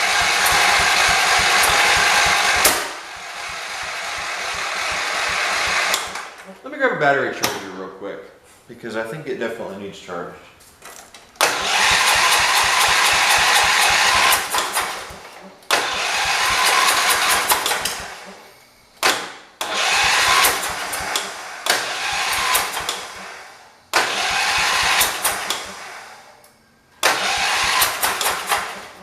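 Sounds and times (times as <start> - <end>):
tractor engine cranking: 0.0 - 6.5, 11.4 - 18.4, 19.6 - 23.2, 24.0 - 25.9, 27.0 - 29.0.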